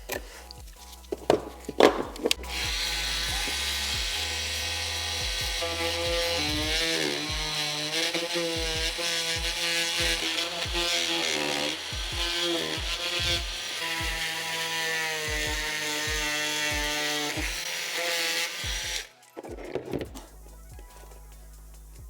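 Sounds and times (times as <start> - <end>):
background music with beat: 0.0 - 17.8, 18.5 - 22.0
power tool blade cutting metal: 1.8 - 19.4.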